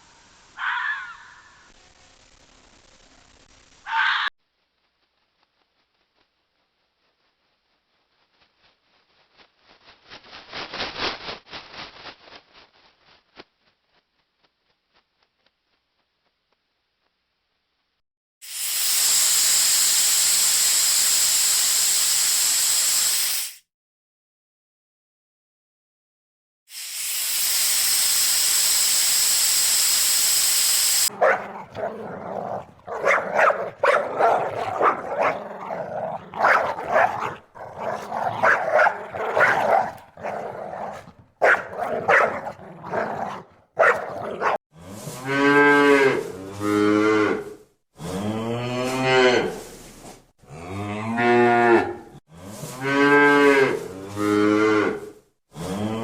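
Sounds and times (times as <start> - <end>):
cattle mooing: 31.1 - 44.6
short busy animal calls: 31.1 - 44.6.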